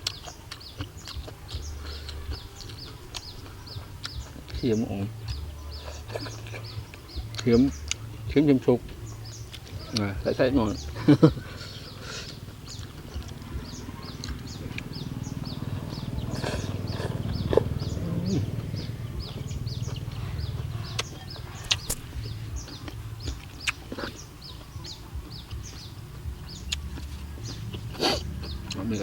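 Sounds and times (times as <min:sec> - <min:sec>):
small animals chirping: 0:00.0 - 0:29.0
sharp clicks: 0:21.0 - 0:22.2.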